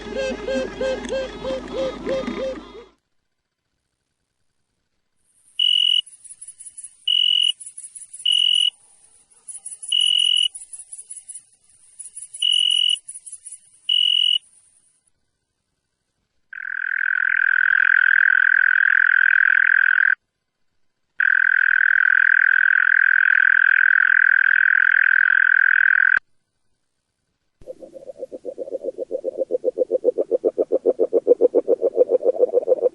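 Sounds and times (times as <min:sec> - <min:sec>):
high pulsed insect buzz: 0:05.3 - 0:15.2
churring insect trill: 0:05.5 - 0:15.0.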